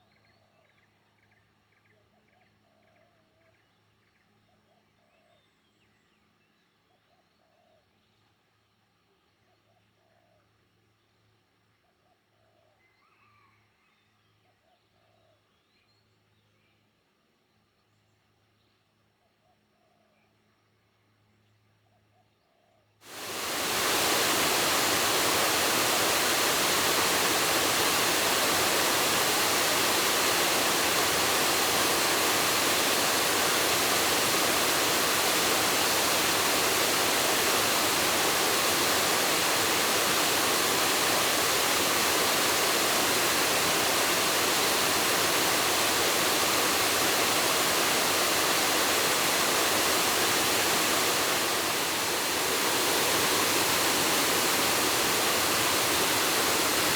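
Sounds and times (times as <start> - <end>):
waterfall rushing: 23.1 - 56.9.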